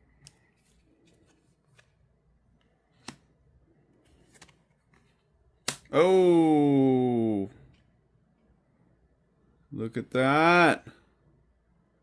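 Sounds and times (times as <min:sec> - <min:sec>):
cards rustling: 0:00.2 - 0:05.9.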